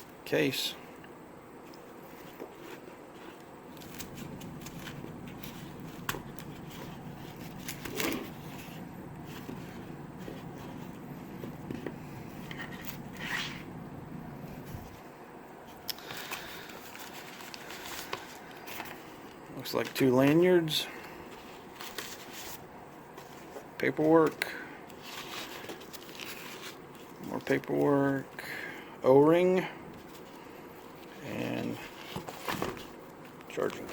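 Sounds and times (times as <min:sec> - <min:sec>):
low steady hum: 0:00.0 - 0:33.9
packaging clicks and crinkles: 0:24.3 - 0:27.7.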